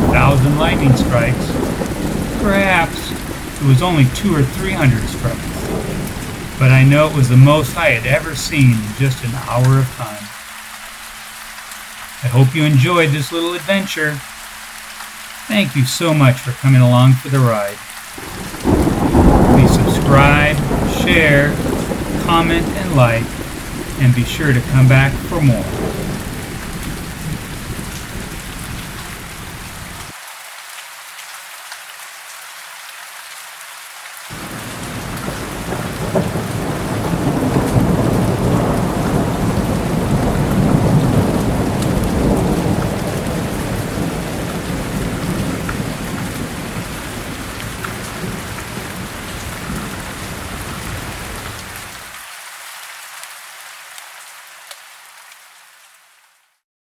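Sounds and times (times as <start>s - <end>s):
thunder rumbling: 0.0s - 10.4s, 15.5s - 30.1s, 34.3s - 52.0s
rain falling: 0.0s - 56.6s.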